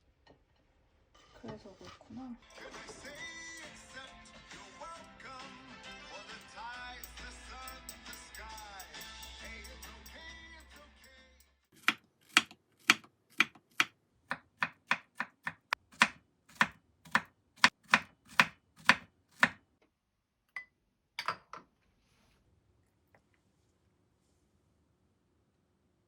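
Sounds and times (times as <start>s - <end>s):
knife chopping on cutting board: 11.8s - 19.6s.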